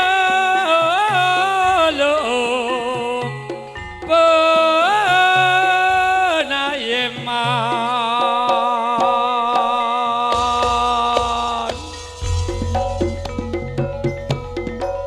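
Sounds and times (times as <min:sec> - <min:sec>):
drums: 0:00.0 - 0:15.0
low gong-like strokes: 0:10.4 - 0:15.0
wavering melody of held notes: 0:10.4 - 0:15.0.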